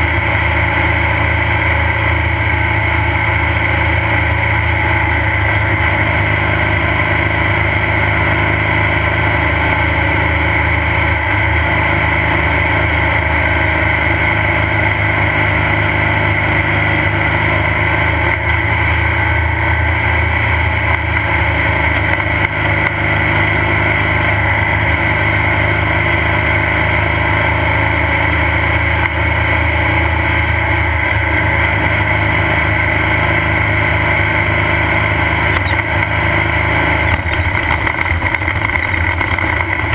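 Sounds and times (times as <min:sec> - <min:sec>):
race car engine running steadily: 0:00.0 - 0:39.9.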